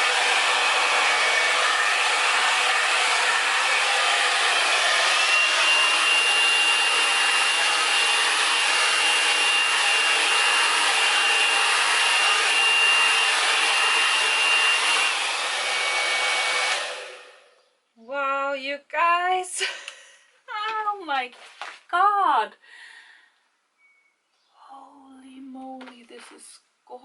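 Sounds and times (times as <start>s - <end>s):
hair dryer blowing: 0.0s - 17.6s.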